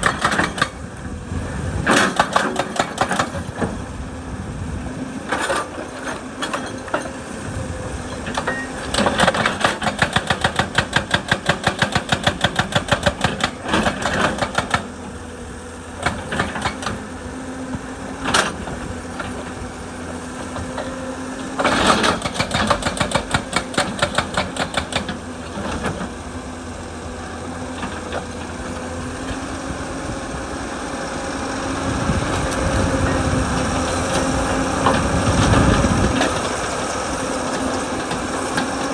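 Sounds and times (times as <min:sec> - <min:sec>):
rock breaker hammering: 0:00.0 - 0:00.8, 0:21.6 - 0:25.2
excavator engine running: 0:00.0 - 0:38.9.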